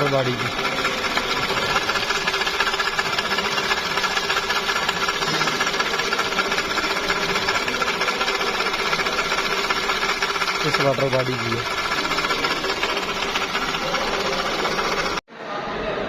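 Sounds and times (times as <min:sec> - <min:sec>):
car engine whirring and rattling: 0:00.0 - 0:15.3.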